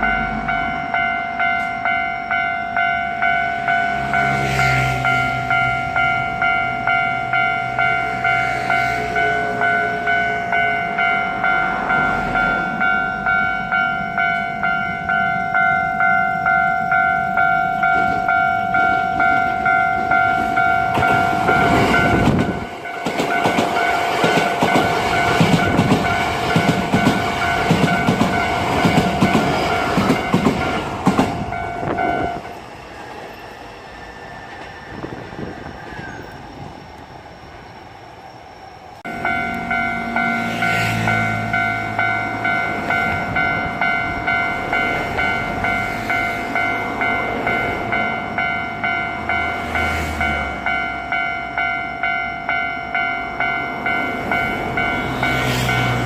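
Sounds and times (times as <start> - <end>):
level-crossing warning bell: 0.0 - 56.0
train wheels clacking over rail joints: 20.4 - 32.1.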